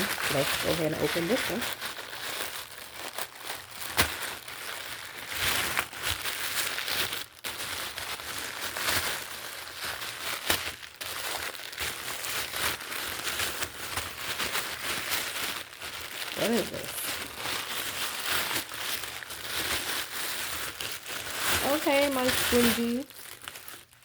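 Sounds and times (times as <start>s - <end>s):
packaging crinkling and tearing: 0.0s - 24.0s
sharp packaging snaps: 3.0s - 4.4s.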